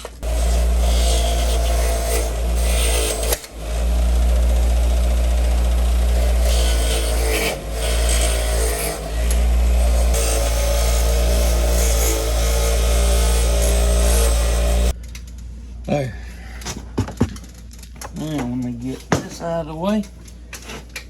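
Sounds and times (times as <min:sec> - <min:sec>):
power tool running: 0:00.0 - 0:15.0.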